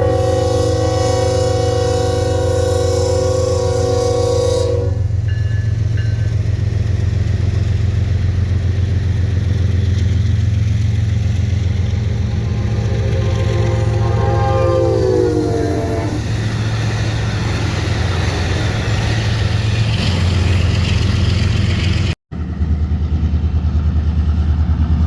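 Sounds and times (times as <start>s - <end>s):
train horn chord: 0.0s - 5.6s, 11.5s - 16.4s
heavy train rumble: 0.0s - 25.0s.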